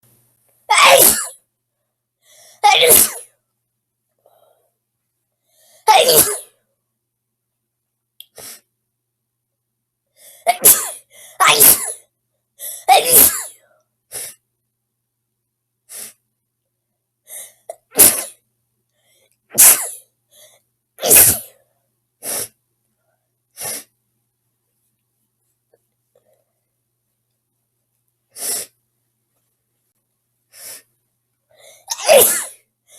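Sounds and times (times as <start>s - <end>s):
girl sneezing: 0.7s - 1.4s, 2.6s - 3.3s, 5.9s - 6.5s, 10.5s - 12.0s, 12.6s - 13.6s, 17.4s - 18.4s, 19.5s - 20.0s, 21.0s - 21.5s, 31.6s - 32.6s
sharp in-breaths: 12.6s - 13.0s, 28.4s - 28.8s.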